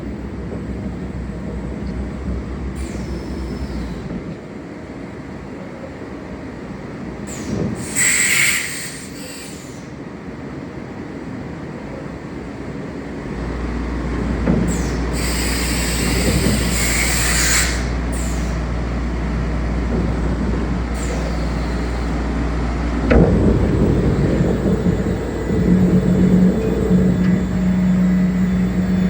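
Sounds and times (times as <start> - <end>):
machine rumbling: 13.1 - 29.0
loud hiss: 14.7 - 29.0.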